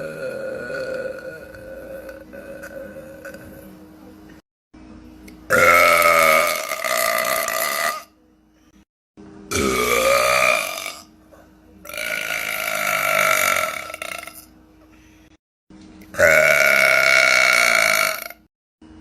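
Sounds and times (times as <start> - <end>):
woman belching loudly: 0.0 - 3.6, 5.5 - 8.1, 9.5 - 11.1, 11.8 - 14.5, 16.1 - 18.5.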